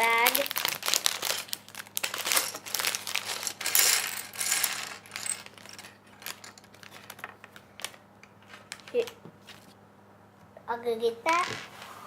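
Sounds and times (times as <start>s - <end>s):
plastic pieces clattering: 0.0s - 9.2s
plastic bag crinkling: 0.0s - 9.7s.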